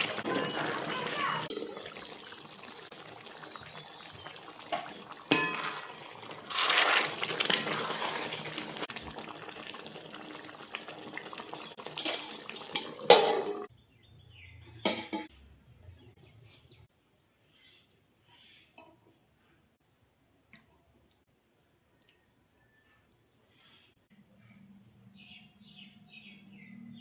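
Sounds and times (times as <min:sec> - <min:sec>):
liquid splashing: 0:00.0 - 0:13.7.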